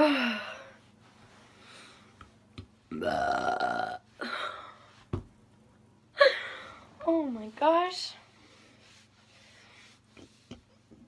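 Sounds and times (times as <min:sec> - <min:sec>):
woman burping loudly: 0:02.9 - 0:04.0.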